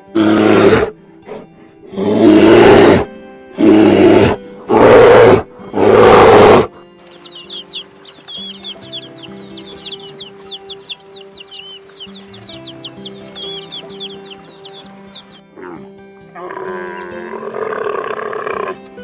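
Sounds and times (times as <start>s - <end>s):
harsh animal calls: 3.6s - 15.8s
background music with high chirps: 6.8s - 19.0s.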